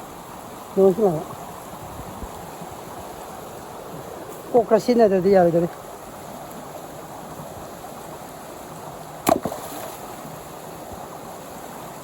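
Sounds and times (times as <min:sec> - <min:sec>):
flowing water rushing: 0:00.0 - 0:12.0
sharp knock: 0:09.2 - 0:09.6.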